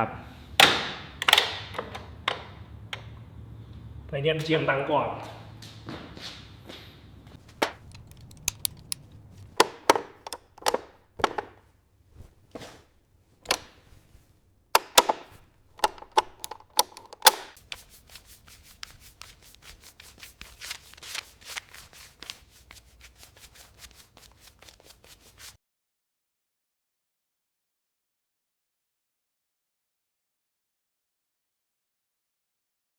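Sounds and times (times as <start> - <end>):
fast light clicks: 7.5 - 11.5, 14.8 - 17.9.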